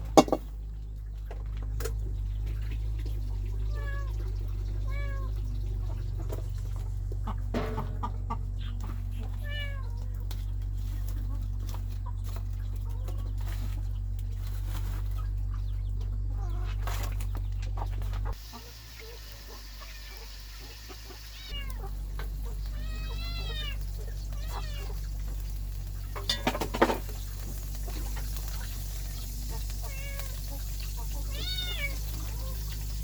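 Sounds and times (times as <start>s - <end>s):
steady low hum: 0.0s - 19.6s
kittens meowing: 3.6s - 6.0s, 9.2s - 10.2s, 21.3s - 25.2s, 29.5s - 32.9s
sharp knocks: 7.5s - 8.2s.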